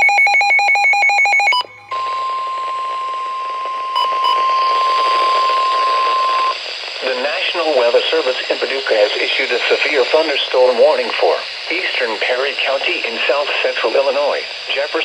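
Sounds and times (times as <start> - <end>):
quick beeps: 0.0 - 2.4
steady alarm tone: 0.0 - 6.6
radio static hiss: 1.8 - 15.0.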